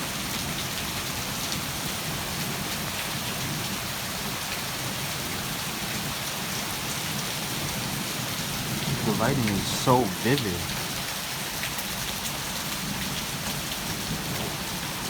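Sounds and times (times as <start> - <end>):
heavy rain pouring: 8.5 - 11.6.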